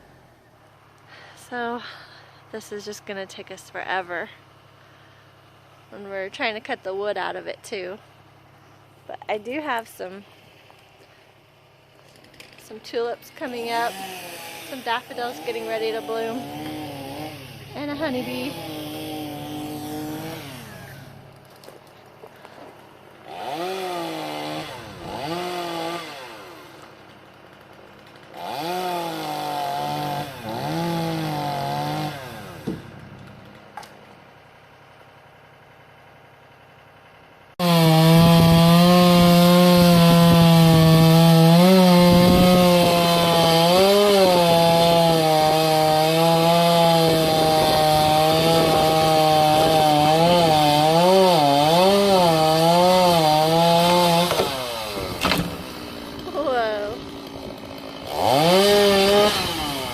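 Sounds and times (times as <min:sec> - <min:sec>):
chainsaw revving in bursts: 0:13.4 - 0:21.4, 0:23.2 - 0:33.5, 0:36.6 - 0:59.9
loud chainsaw cutting wood: 0:13.4 - 0:59.9.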